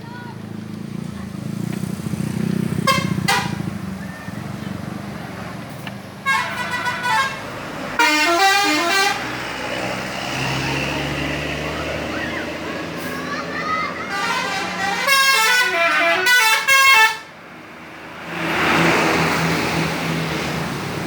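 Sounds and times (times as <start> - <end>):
bus engine running: 0.0 - 21.0
multi-tone musical bus horn: 2.8 - 3.7, 6.2 - 9.8, 11.7 - 17.4.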